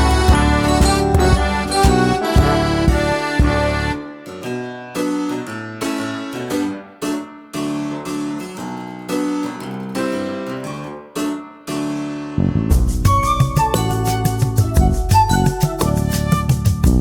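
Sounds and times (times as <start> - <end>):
keyboard melody: 0.0 - 5.5, 12.4 - 17.0.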